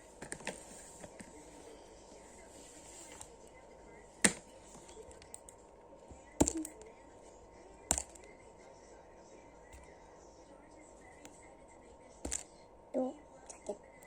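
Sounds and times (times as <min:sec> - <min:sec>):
toys clicking: 0:06.4 - 0:06.9, 0:07.9 - 0:08.3.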